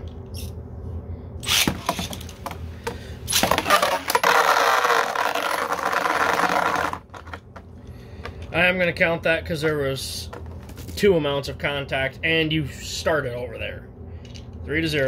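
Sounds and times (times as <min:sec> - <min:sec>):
rattling spin: 0:03.3 - 0:07.4.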